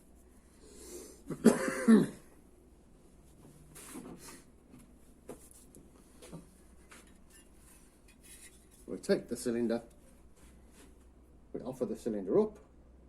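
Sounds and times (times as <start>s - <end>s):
soft rustle: 2.9s - 11.2s.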